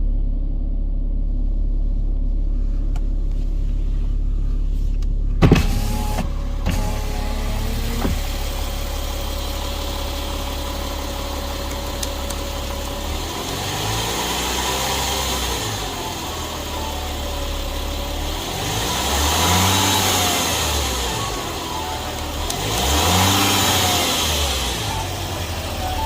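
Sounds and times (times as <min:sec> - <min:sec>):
car engine idling and revving: 0:00.0 - 0:26.0.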